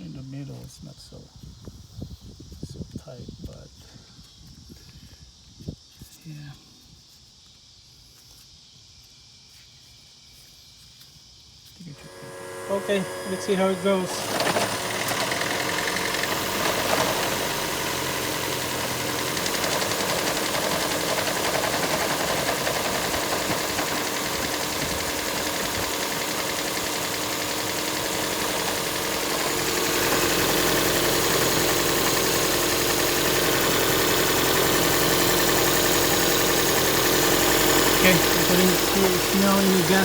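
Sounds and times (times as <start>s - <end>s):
car engine running: 11.9s - 40.0s.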